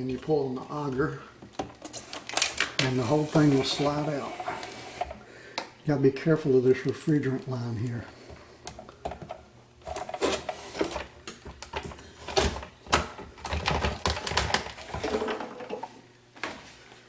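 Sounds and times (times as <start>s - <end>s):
plastic scraping: 1.9s - 5.2s.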